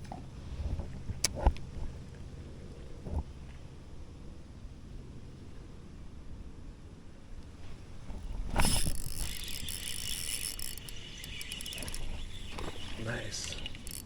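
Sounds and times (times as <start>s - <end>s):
fishing reel whirring and clicking: 8.5s - 14.0s.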